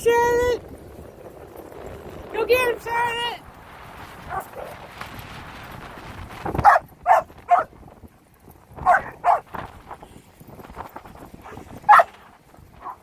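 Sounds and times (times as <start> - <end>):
dog barking: 4.3 - 4.8, 6.6 - 7.7, 8.8 - 9.5, 11.4 - 12.2, 12.8 - 13.0.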